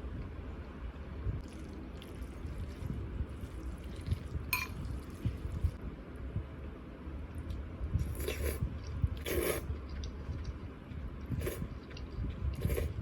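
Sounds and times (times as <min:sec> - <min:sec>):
person chewing food: 0:08.0 - 0:13.0.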